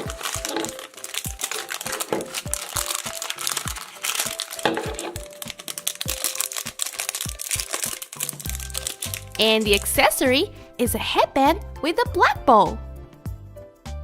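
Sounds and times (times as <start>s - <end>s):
plastic packaging crumpling and tearing: 0.0s - 10.3s
background music with steady beat: 12.6s - 14.0s.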